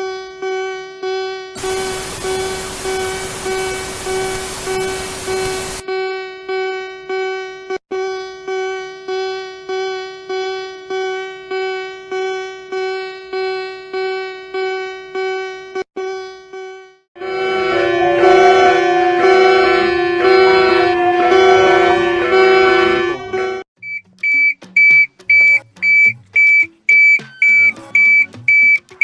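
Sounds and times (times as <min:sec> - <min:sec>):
buzzy alarm beeping: 0:01.6 - 0:05.8, 0:17.3 - 0:28.8
static hiss: 0:01.6 - 0:05.8.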